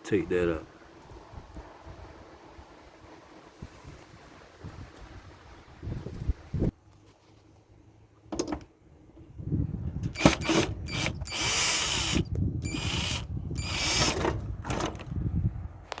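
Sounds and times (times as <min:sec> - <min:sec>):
short bursts: 0:10.2 - 0:14.2.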